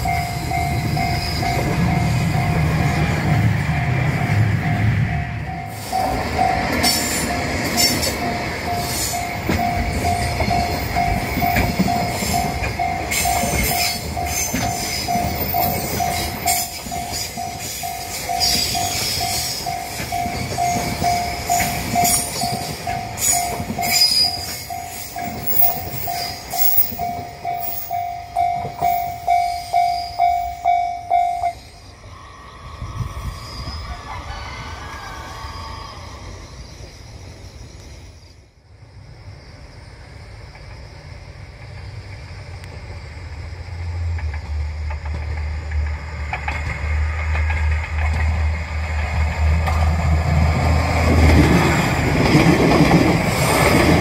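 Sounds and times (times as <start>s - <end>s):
train wheels clacking on rails: 0.0s - 31.6s, 43.7s - 54.0s
railway crossing bell clanging: 0.0s - 34.4s.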